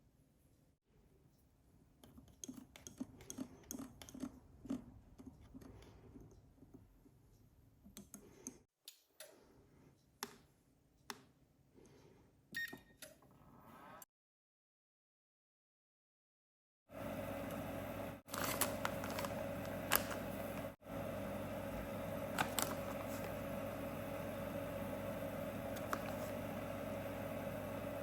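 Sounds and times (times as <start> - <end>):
utensils clicking and tapping: 2.0 - 5.8.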